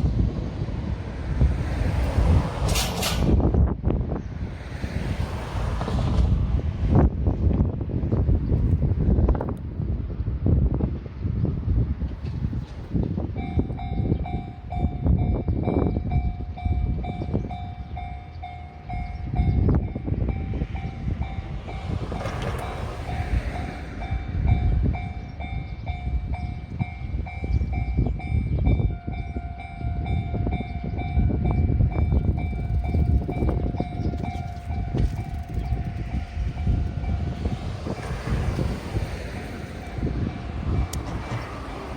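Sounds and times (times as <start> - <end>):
train wheels rumbling on rails: 0.0 - 41.9
level-crossing warning bell: 13.3 - 41.9.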